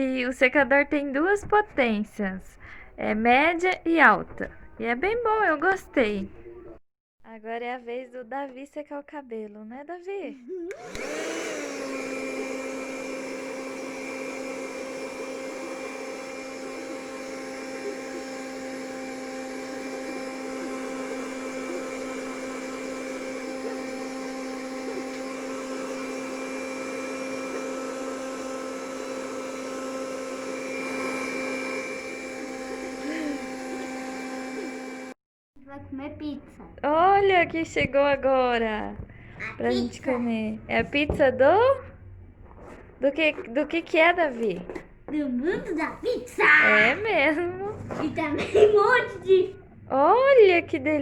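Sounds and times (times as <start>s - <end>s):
hair dryer running: 10.7s - 35.2s.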